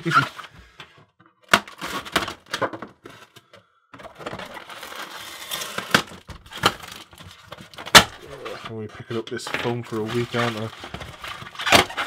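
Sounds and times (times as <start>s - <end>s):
packaging crackling rustle: 4.1s - 8.7s, 9.5s - 12.0s.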